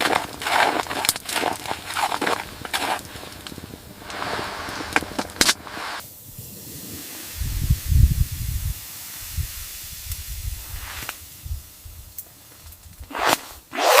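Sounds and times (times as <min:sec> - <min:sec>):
wind hissing and gusting: 0:00.0 - 0:14.0.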